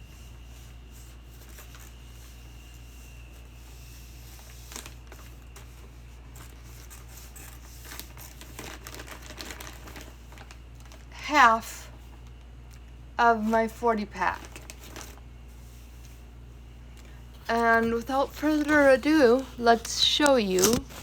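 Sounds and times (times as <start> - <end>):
steady low hum: 0.0 - 8.4, 10.0 - 21.0
plastic bottles crinkling: 6.4 - 11.1, 14.3 - 15.2, 17.0 - 21.0.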